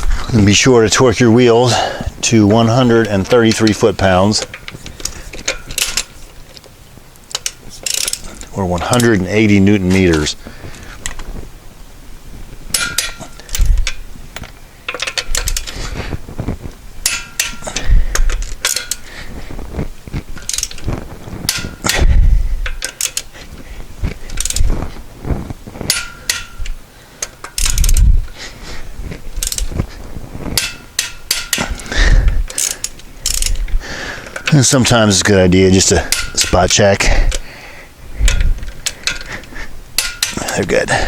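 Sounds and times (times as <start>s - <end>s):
torque wrench ratchet clicks: 7.3s - 9.2s, 12.7s - 15.8s, 20.4s - 20.9s, 21.5s - 23.4s, 24.3s - 24.7s, 25.9s - 28.1s, 29.4s - 29.7s, 30.6s - 34.9s.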